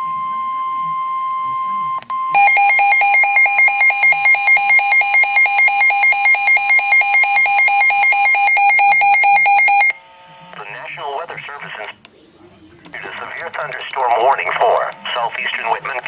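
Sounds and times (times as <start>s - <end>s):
rapid pulsed alarm beeps: 0.4s - 10.0s.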